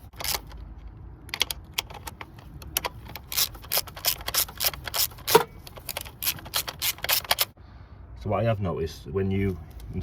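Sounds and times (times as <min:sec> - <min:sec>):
plastic and metal parts clicking: 0:00.0 - 0:07.5.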